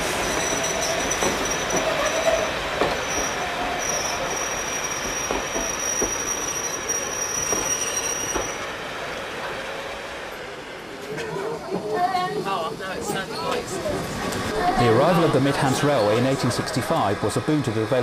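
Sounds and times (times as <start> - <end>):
train wheels squealing on rails: 0.0 - 9.2, 12.3 - 17.8
train rumble: 7.4 - 18.0.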